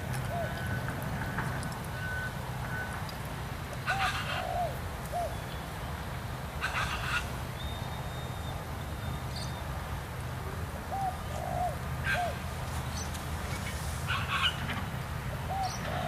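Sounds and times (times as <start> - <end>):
birds calling: 0.0 - 3.1, 3.8 - 9.7, 10.9 - 16.0
excavator diesel engine humming: 0.0 - 4.4.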